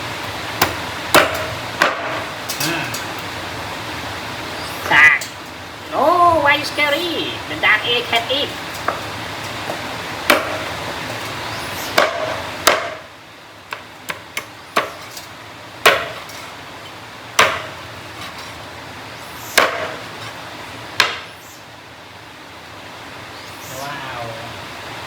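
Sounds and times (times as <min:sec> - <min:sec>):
sharp knocks of chopping food: 0:00.6 - 0:02.2, 0:10.3 - 0:10.7, 0:12.0 - 0:13.1, 0:13.7 - 0:15.0, 0:15.9 - 0:16.2, 0:17.4 - 0:17.8, 0:19.6 - 0:20.0, 0:21.0 - 0:21.3.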